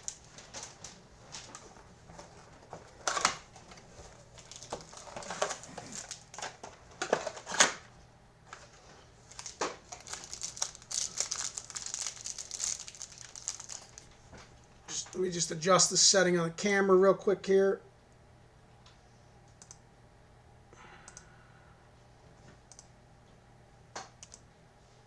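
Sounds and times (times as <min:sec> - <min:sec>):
wrappers and cardboard crinkling: 0:00.0 - 0:07.8, 0:08.5 - 0:14.9
packaging snapping: 0:03.0 - 0:07.8, 0:09.2 - 0:14.2.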